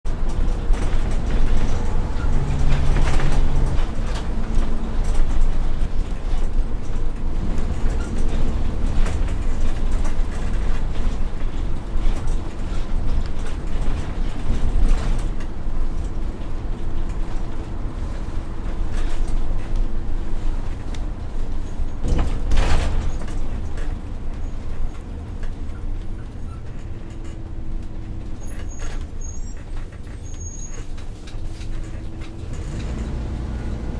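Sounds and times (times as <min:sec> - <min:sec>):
bus engine and road rumble: 0:00.0 - 0:33.9
rattles and knocks: 0:00.1 - 0:15.5.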